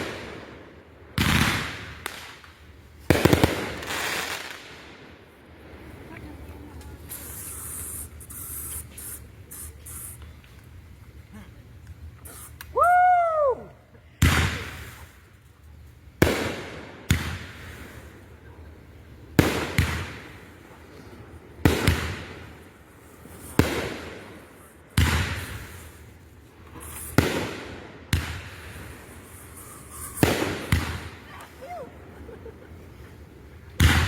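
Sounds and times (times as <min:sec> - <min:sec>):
fireworks bangs echoing: 0:00.0 - 0:06.2, 0:14.2 - 0:15.1, 0:16.2 - 0:18.2, 0:19.3 - 0:20.7, 0:21.5 - 0:26.1, 0:26.8 - 0:31.6, 0:33.8 - 0:34.0.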